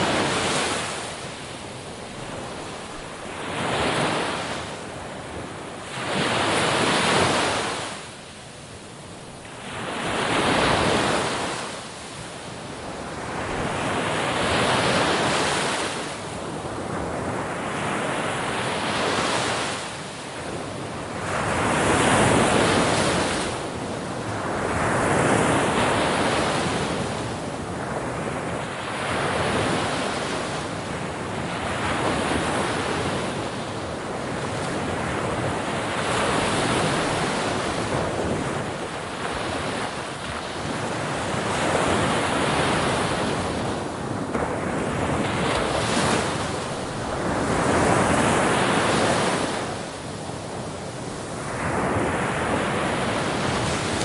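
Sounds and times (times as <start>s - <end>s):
sea waves breaking on shore: 0.0s - 54.0s.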